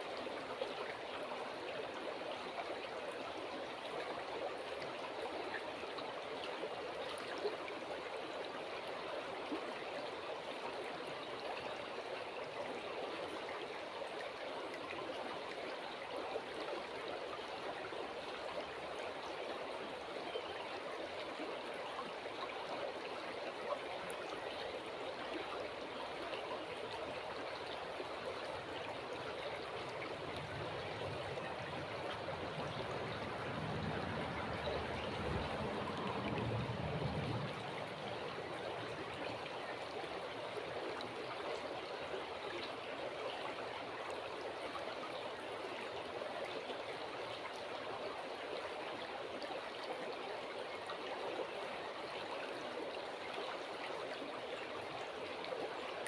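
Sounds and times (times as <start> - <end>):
river water rushing: 24.7 - 56.0.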